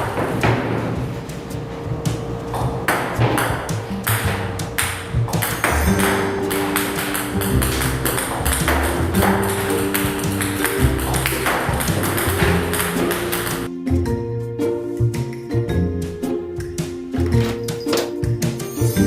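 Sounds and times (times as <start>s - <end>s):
steady percussive beat: 1.0s - 13.7s
music with held notes: 1.0s - 19.0s.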